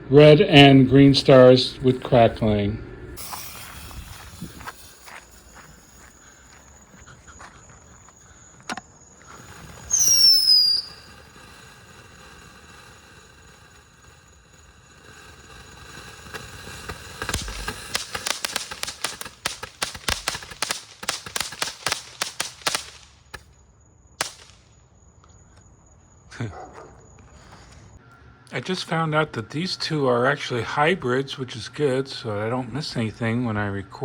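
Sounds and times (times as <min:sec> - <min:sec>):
firework whistle falling in pitch: 0:03.2 - 0:07.0, 0:09.3 - 0:11.4
crackling firework pops: 0:03.2 - 0:23.6, 0:24.2 - 0:24.9.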